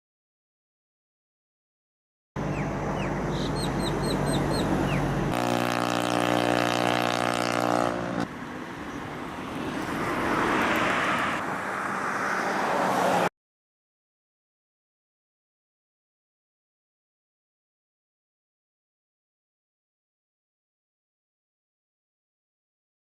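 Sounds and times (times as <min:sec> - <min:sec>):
birds chirping: 0:02.4 - 0:05.3
engine running: 0:02.4 - 0:11.4
noisy outdoor background: 0:02.4 - 0:13.3.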